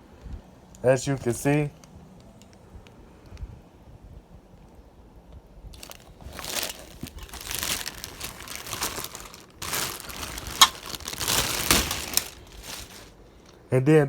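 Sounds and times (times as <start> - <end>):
packaging crinkling and rustling: 5.8 - 13.6.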